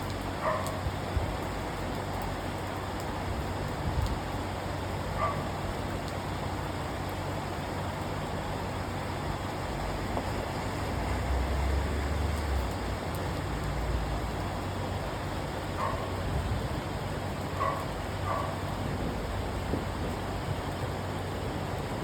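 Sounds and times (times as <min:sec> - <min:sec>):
heavy rain hissing: 0:02.8 - 0:22.0.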